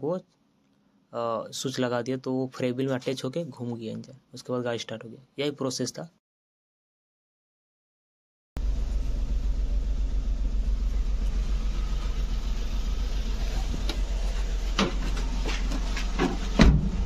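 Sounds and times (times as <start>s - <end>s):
car engine idling: 8.6s - 16.6s.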